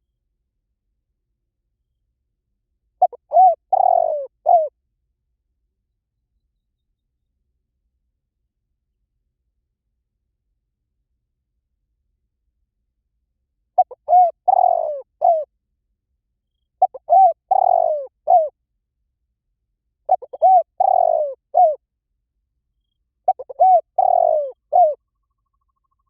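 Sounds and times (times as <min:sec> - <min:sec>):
dove cooing: 0:03.0 - 0:04.7, 0:13.8 - 0:15.5, 0:16.8 - 0:18.5, 0:20.1 - 0:21.8, 0:23.2 - 0:25.0.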